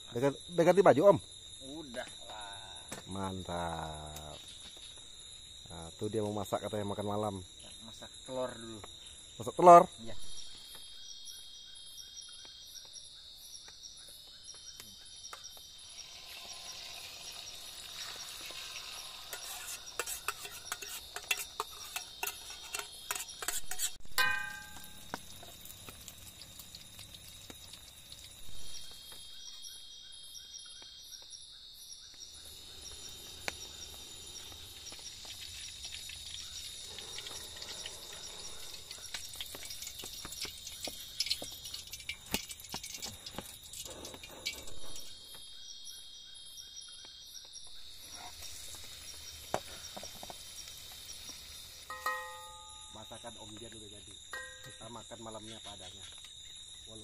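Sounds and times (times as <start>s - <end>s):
forest insects chorus: 0.0s - 57.0s
ringing metal clink: 24.2s - 25.1s, 51.9s - 53.2s, 54.3s - 55.0s.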